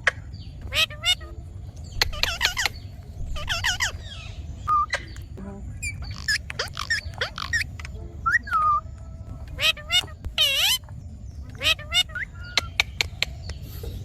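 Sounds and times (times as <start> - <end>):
parrot squawking and chirping: 0.0 - 14.0.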